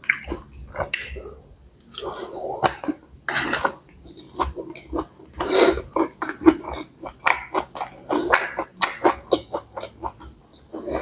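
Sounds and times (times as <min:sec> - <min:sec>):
wet chewing and smacking: 0:00.0 - 0:11.0
slurping noodles: 0:02.0 - 0:10.2.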